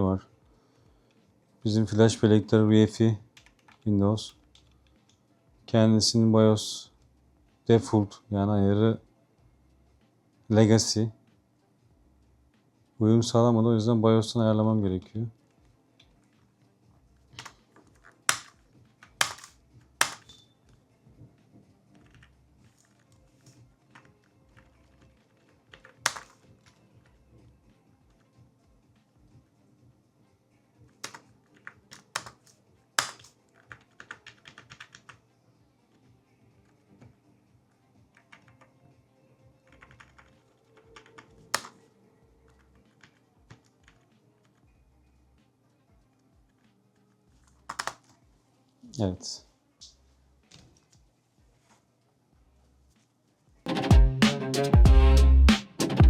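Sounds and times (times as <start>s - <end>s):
computer keyboard key presses: 17.4s - 20.3s, 25.3s - 26.4s, 31.0s - 35.2s, 39.7s - 41.8s, 47.7s - 48.1s.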